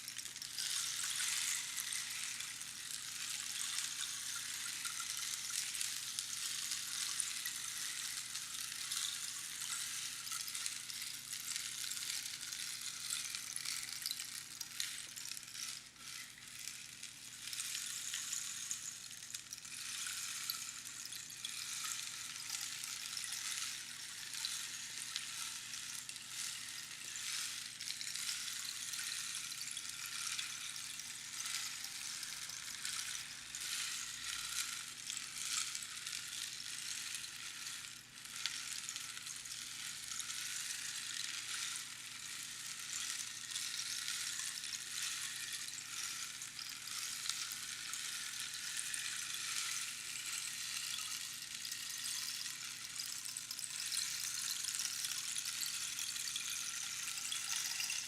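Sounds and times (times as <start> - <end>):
rainstick pebbles trickling: 0.0 - 58.0.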